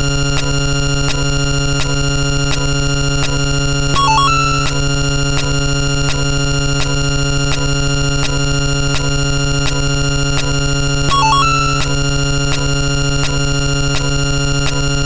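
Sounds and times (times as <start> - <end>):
held electronic tones: 0.4 - 15.0
stepped beeping jingle: 3.9 - 4.9, 11.1 - 12.0.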